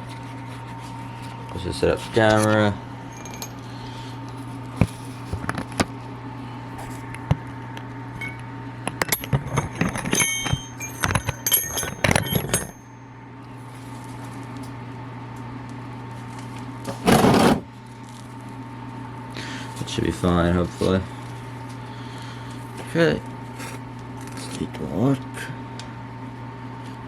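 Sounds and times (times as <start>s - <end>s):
steady low hum: 0.0s - 27.0s
metal hardware clinking: 3.1s - 3.6s, 9.0s - 12.9s.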